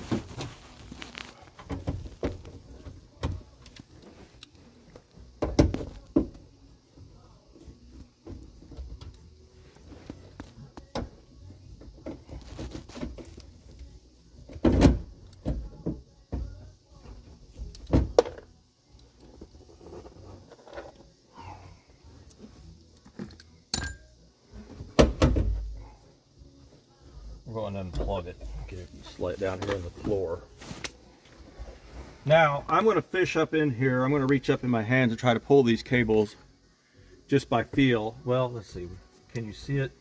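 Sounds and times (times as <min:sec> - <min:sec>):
knocks and clicks of hand work: 0:05.4 - 0:06.4.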